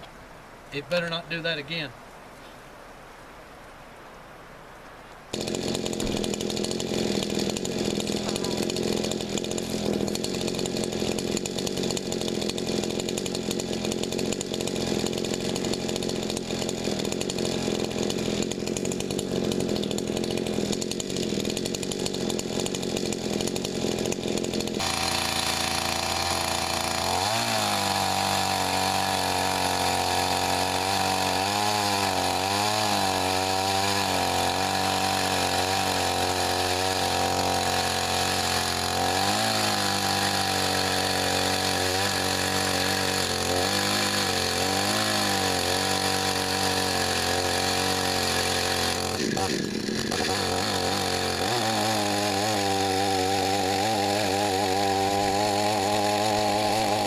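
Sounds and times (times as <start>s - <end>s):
chainsaw cutting wood: 5.3s - 57.0s.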